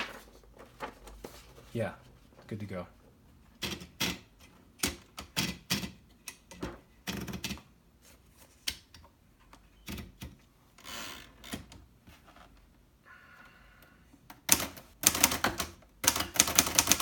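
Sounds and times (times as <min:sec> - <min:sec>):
typewriter keys clacking: 0:14.5 - 0:17.0.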